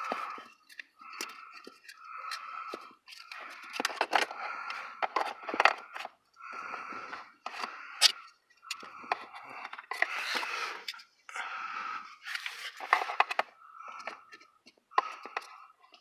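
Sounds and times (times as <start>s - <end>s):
hard plastic scraping: 0.0s - 11.0s, 12.2s - 16.0s
plastic clicks and knocks: 0.1s - 4.4s, 5.0s - 6.1s, 12.8s - 16.0s.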